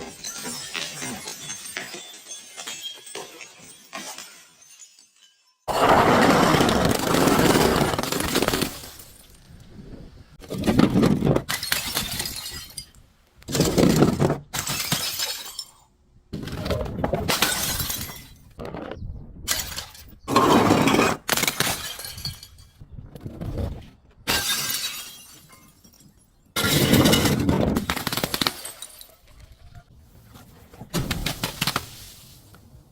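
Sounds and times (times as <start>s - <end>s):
glass bottles smashing: 0.0s - 9.4s, 11.4s - 15.9s, 17.2s - 18.5s, 19.5s - 22.8s, 24.3s - 29.4s.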